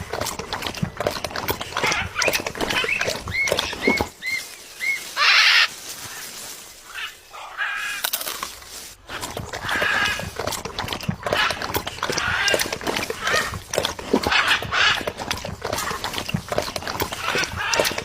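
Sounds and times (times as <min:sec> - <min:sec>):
bird calling: 0:01.7 - 0:08.1, 0:11.2 - 0:16.1, 0:16.8 - 0:18.0.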